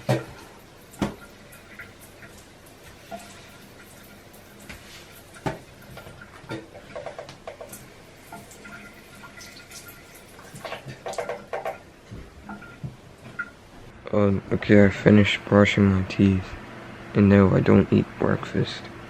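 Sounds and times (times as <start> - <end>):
water splashing at a sink: 0.0 - 13.6.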